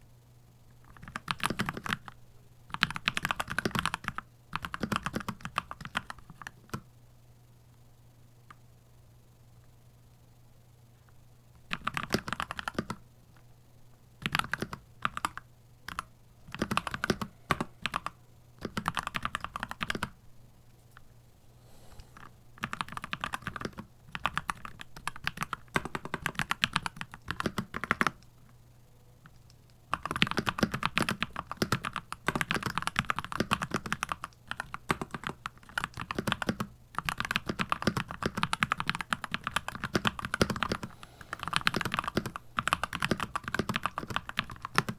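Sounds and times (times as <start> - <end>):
mechanical keyboard typing: 0.8 - 6.9, 11.7 - 13.0, 14.2 - 20.2, 22.2 - 28.3, 29.3 - 44.9.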